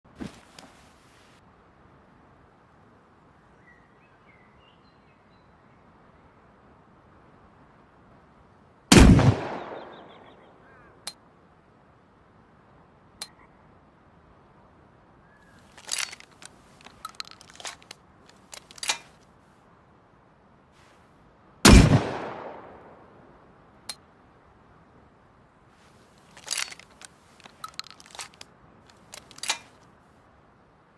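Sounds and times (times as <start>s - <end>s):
sharp mechanical clicks: 15.7s - 19.2s, 26.3s - 29.8s
shotgun blast with echo: 21.7s - 22.8s.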